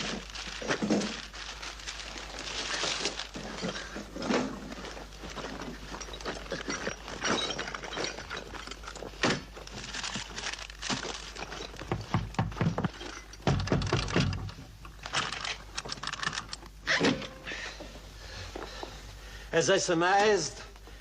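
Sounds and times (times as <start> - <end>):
hard objects clattering: 0.0 - 16.7.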